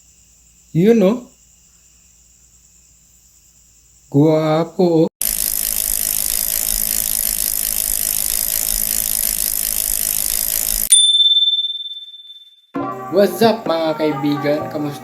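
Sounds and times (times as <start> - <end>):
bicycle freehub buzzing: 5.2 - 10.9
bell ding: 10.9 - 12.6.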